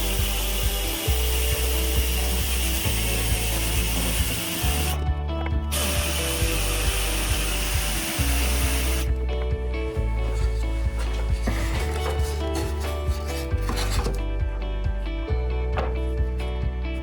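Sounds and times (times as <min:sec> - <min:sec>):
background music with stepping bass: 0:00.0 - 0:17.0
workshop tool noise: 0:05.7 - 0:09.1, 0:10.3 - 0:14.2.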